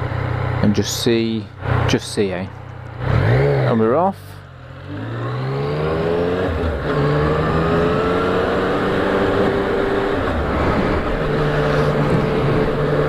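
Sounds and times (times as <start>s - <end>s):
motorcycle engine accelerating: 0.0s - 13.0s
wind rushing in helmet: 7.5s - 13.0s.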